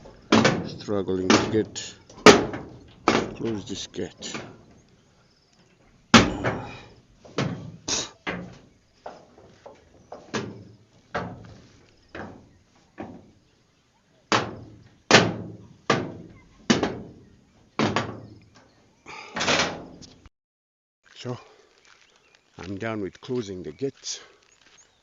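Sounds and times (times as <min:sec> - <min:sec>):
gate banging shut: 0:00.0 - 0:04.8, 0:06.1 - 0:09.5, 0:10.2 - 0:13.3, 0:14.3 - 0:17.2, 0:17.8 - 0:18.4, 0:19.4 - 0:20.0.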